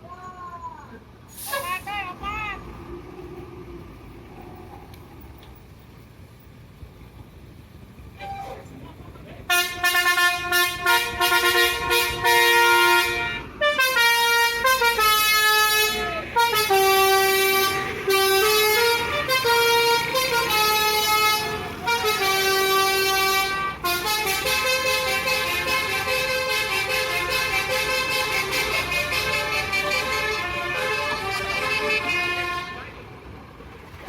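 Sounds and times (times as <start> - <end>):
multi-tone bus air horn tune: 8.2 - 8.6, 9.5 - 33.1.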